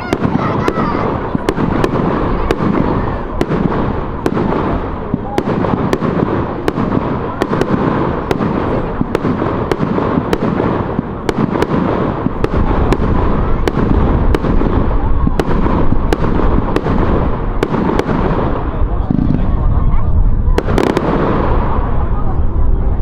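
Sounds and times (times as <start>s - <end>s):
fireworks bangs and crackling: 0.0s - 23.0s
low booming fireworks: 0.0s - 23.0s.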